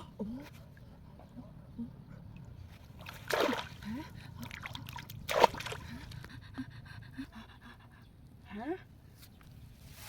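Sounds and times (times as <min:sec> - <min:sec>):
water splashing: 0:02.9 - 0:06.1.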